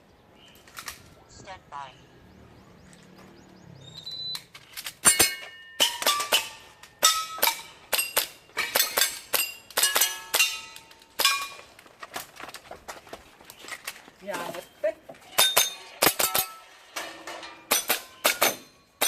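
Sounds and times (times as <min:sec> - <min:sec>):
pellets ringing on metal targets: 0:05.0 - 0:11.7, 0:15.3 - 0:19.0.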